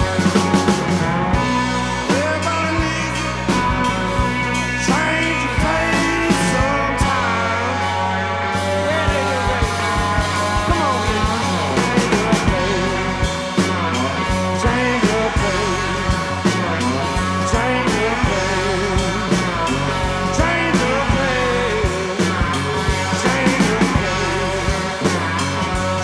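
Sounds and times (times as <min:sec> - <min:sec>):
bass: 0:00.0 - 0:26.0
bending lead guitar: 0:00.0 - 0:26.0.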